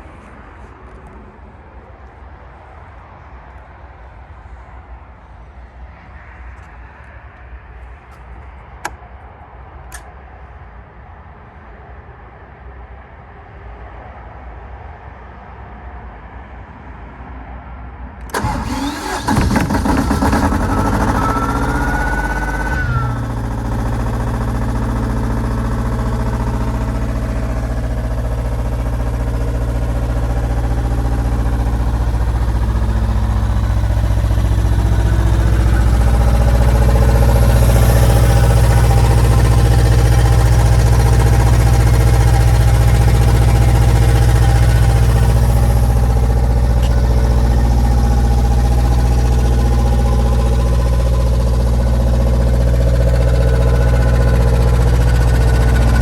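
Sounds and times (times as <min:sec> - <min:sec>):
diesel compressor engine drone: 0:18.3 - 0:56.0.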